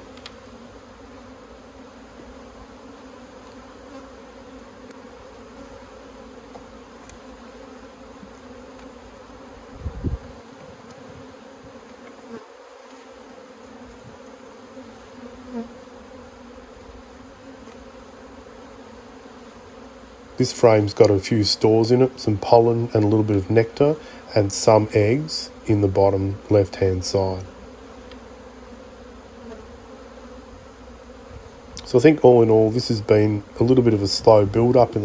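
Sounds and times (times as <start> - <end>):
bees buzzing: 0.0 - 35.0.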